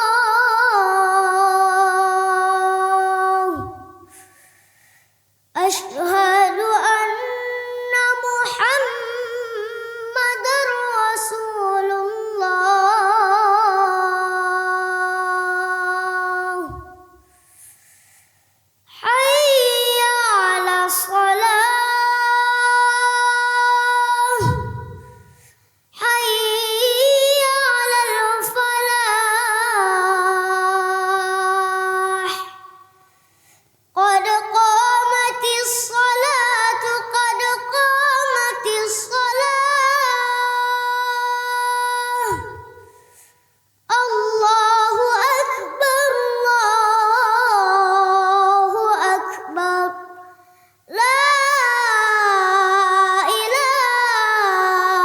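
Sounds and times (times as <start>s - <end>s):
young voice singing unaccompanied: 0.0s - 4.5s, 5.5s - 17.4s, 18.9s - 33.0s, 33.9s - 43.3s, 43.9s - 55.0s
breaths: 4.0s - 5.5s, 17.2s - 18.9s, 25.1s - 25.9s, 32.8s - 33.9s, 42.8s - 43.8s, 50.3s - 50.9s.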